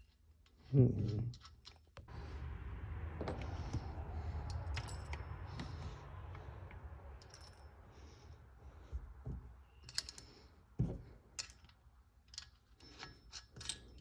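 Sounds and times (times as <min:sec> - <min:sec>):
low rumble: 0:02.1 - 0:09.6.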